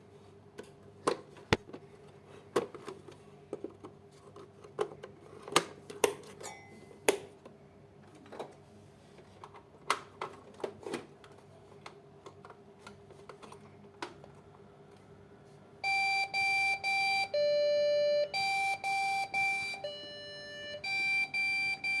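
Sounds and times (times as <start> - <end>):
computer beeper error code: 15.8 - 22.0.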